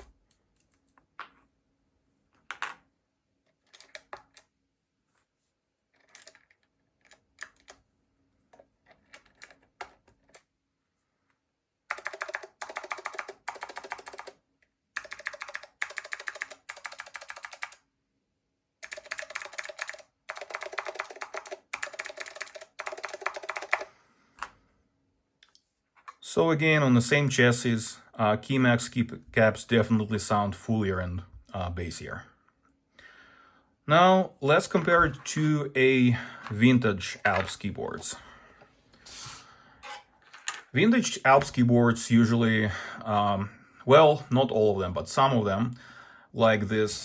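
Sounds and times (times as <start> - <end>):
clicky mechanical keyboard typing: 3.7 - 4.5, 11.9 - 14.4, 15.0 - 17.8, 18.8 - 23.9.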